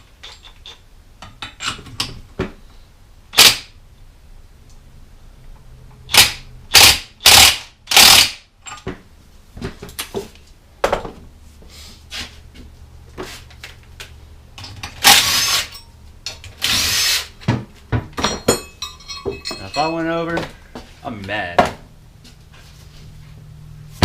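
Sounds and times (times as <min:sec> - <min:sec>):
tools and parts clanking: 0:00.0 - 0:02.6, 0:08.6 - 0:09.0, 0:14.5 - 0:16.8, 0:17.4 - 0:21.0
impact wrench bursts: 0:03.3 - 0:03.7, 0:06.1 - 0:08.5, 0:14.9 - 0:15.8, 0:16.6 - 0:17.4.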